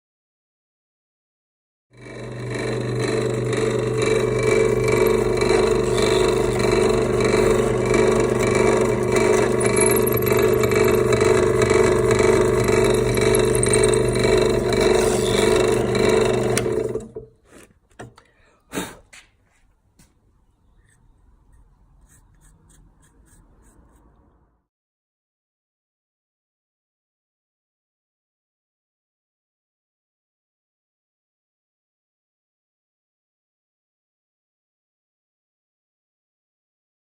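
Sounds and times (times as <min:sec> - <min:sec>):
electric drill boring through wood: 0:02.0 - 0:17.3.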